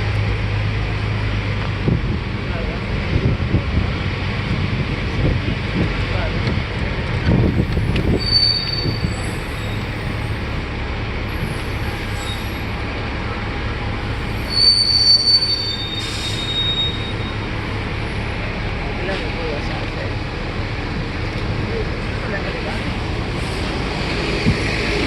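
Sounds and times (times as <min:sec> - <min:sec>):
bus and traffic noise: 0:00.0 - 0:25.0
high brake squeals: 0:07.5 - 0:12.9, 0:14.0 - 0:17.9.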